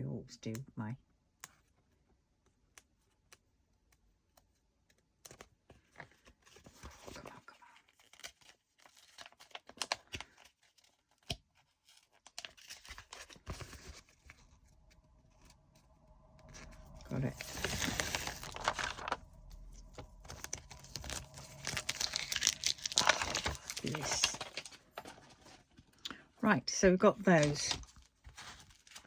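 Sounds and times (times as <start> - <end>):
plastic packets crinkling: 16.5 - 26.1, 27.2 - 29.0.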